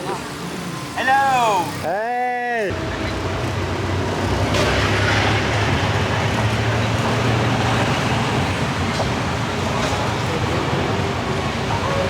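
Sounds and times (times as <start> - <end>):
road traffic noise: 0.0 - 12.0
vehicle engine humming: 2.7 - 12.0.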